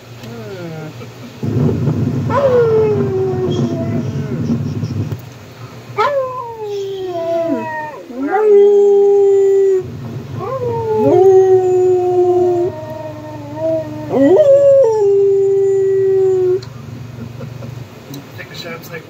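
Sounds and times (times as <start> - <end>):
dog howling: 2.2 - 4.7, 6.0 - 16.7.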